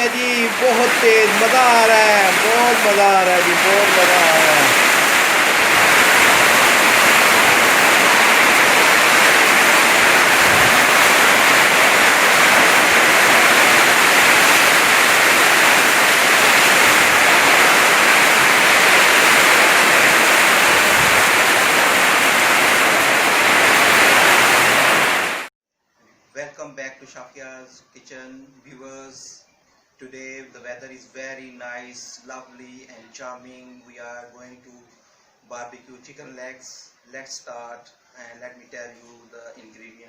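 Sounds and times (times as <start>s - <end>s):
heavy rain downpour: 0.0s - 25.5s.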